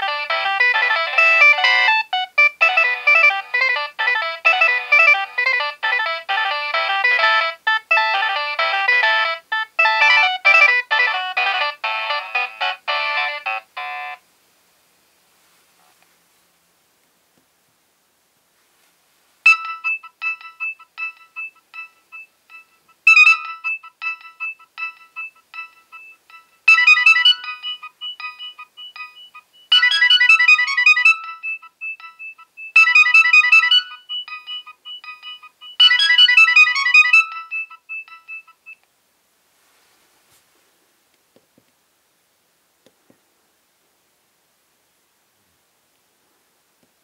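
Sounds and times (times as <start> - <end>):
phone ringtone melody: 0.0 - 14.2, 19.5 - 38.8.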